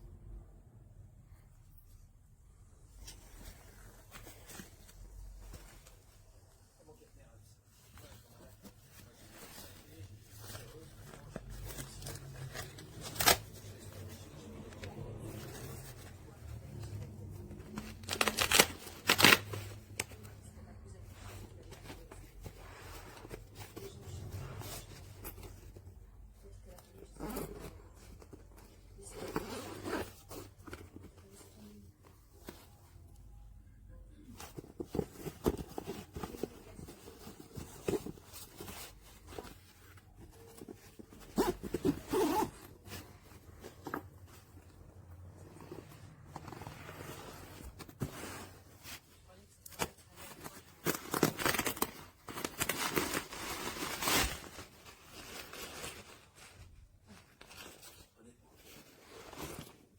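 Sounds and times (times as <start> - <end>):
fabric bag rustling: 7.6 - 59.9
zipper rasping: 27.1 - 28.1, 29.0 - 30.3, 40.6 - 44.0.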